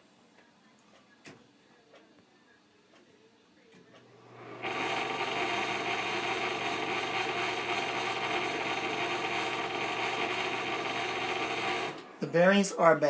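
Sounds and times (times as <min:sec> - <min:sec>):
electric fan whirring: 0:03.8 - 0:13.0.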